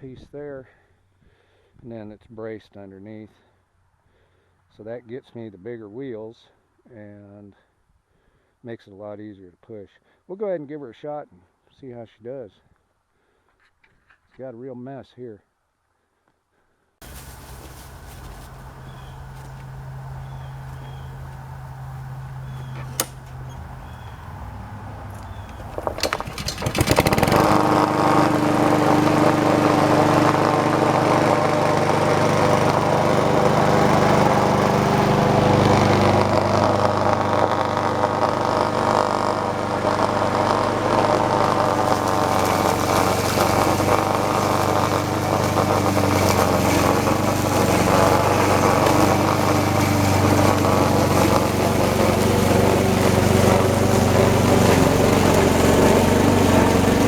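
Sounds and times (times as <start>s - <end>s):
lawn mower engine mowing grass: 17.0s - 57.0s.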